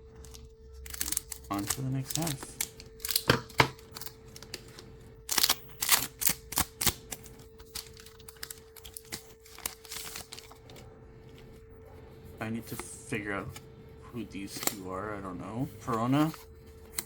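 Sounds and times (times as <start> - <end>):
faint steady hum: 0.0 - 17.0
foil packs crinkling and tearing: 0.2 - 10.9.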